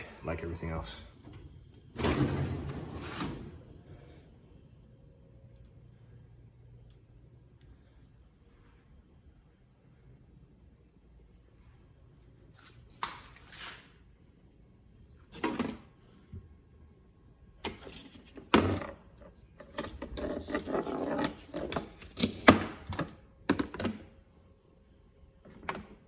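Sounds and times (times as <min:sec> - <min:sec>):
metal drawers sliding and clunking: 0:01.9 - 0:03.7
tools rattling in drawer: 0:19.6 - 0:24.0.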